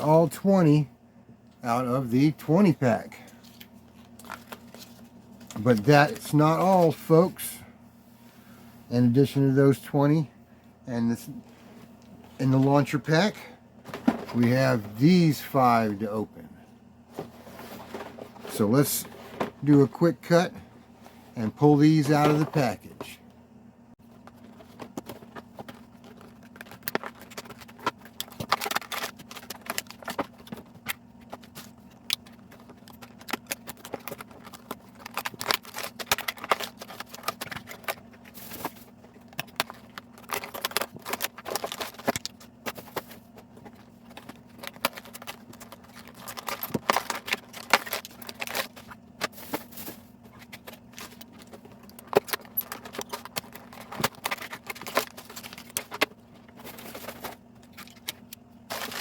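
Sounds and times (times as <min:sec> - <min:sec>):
steady low hum: 0:00.0 - 0:59.0
plastic packaging crinkling: 0:03.4 - 0:07.0, 0:24.1 - 0:59.0.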